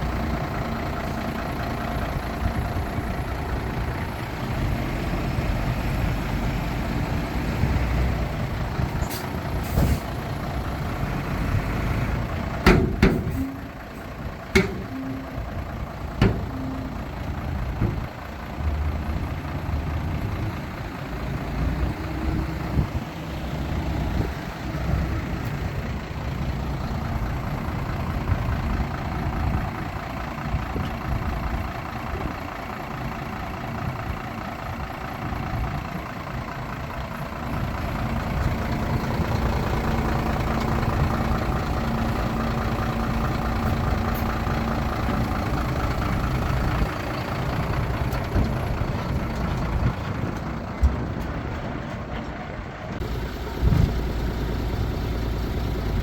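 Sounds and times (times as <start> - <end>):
heavy machinery running: 34.7 - 56.0.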